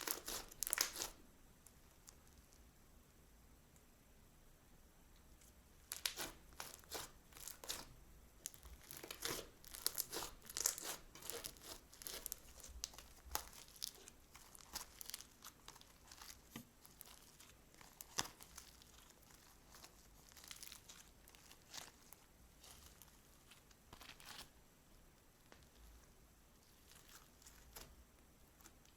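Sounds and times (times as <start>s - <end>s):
slime crackling and popping: 0.0s - 1.2s, 5.9s - 24.5s.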